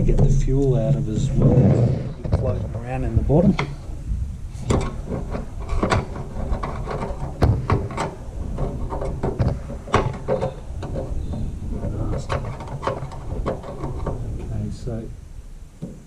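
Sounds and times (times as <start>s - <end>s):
tools and metal parts clattering: 4.5s - 14.4s.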